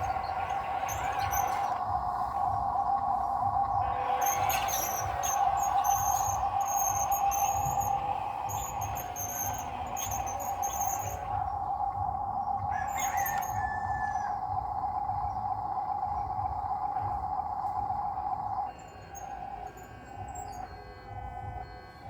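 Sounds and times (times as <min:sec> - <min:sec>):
birds chirping: 0:00.0 - 0:22.0
steady hum and low rumble: 0:00.0 - 0:22.0
falling whistled bird call: 0:12.6 - 0:17.2.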